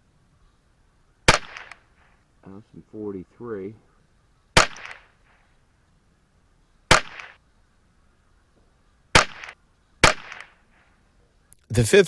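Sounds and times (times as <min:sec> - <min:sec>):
rifle shots: 0:01.3 - 0:01.8, 0:04.6 - 0:05.2, 0:06.9 - 0:07.4, 0:09.1 - 0:10.6.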